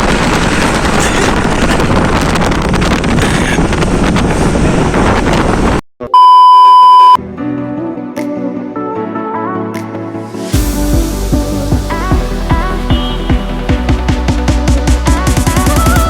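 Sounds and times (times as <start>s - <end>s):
wind buffeting microphone: 0.0s - 5.8s
loud steady electronic beep: 6.1s - 7.2s, 12.9s - 13.4s
background music: 7.2s - 16.0s.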